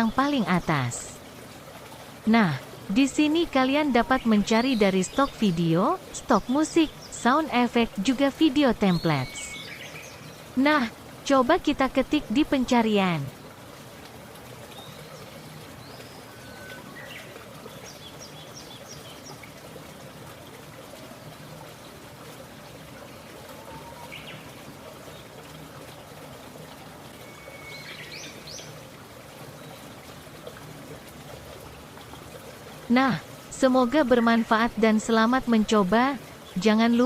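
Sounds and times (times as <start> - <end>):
birds chirping: 0.0 - 1.2, 2.3 - 10.9
stream trickling: 0.0 - 37.0.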